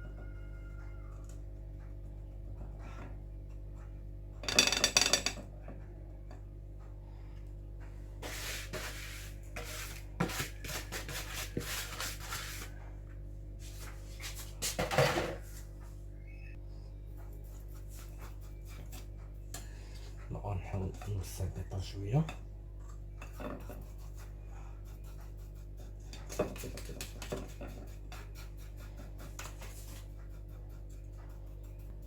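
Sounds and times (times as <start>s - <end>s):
utensil scraping a bowl: 8.2s - 12.7s, 23.1s - 30.4s.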